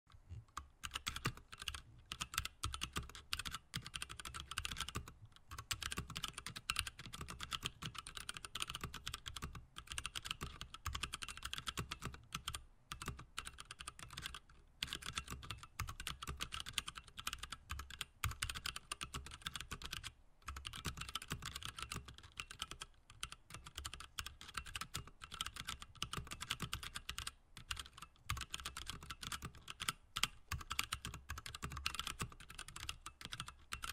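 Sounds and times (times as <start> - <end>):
mechanical keyboard typing: 0.5 - 33.9.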